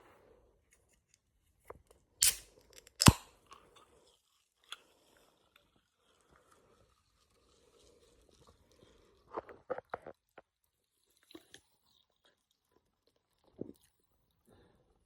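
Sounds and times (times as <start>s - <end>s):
can cracking open with hiss: 2.2s - 3.3s
sharp click: 2.2s - 3.3s.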